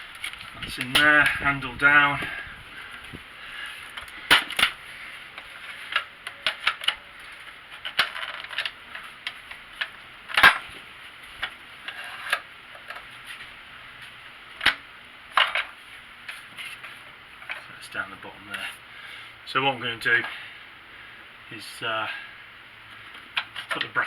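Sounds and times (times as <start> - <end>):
sharp clicks and light knocks: 23.0 - 24.0.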